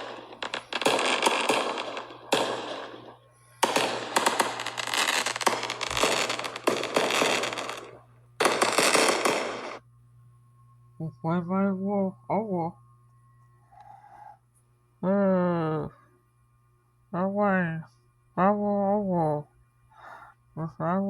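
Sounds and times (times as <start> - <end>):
dense fireworks crackling: 0.0 - 9.8
fireworks bursts: 0.0 - 9.8.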